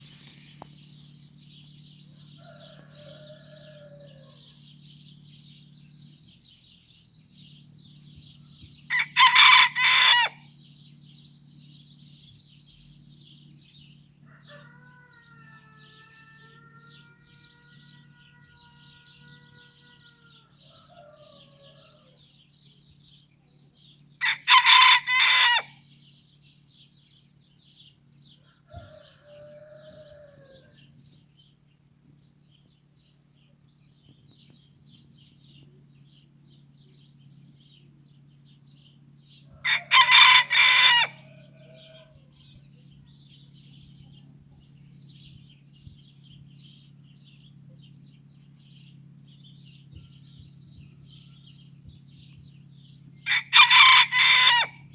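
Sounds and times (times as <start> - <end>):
low steady hum: 0.0 - 54.9
rooster crowing: 2.1 - 4.7, 8.9 - 10.5, 14.2 - 22.2, 24.2 - 25.8, 28.4 - 30.9, 39.5 - 42.5, 53.3 - 54.9.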